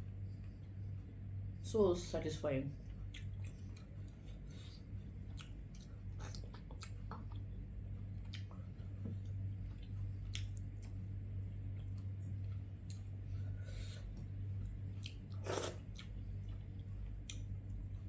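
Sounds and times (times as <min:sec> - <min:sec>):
steady low hum: 0:00.0 - 0:18.0
person chewing food: 0:02.8 - 0:18.0.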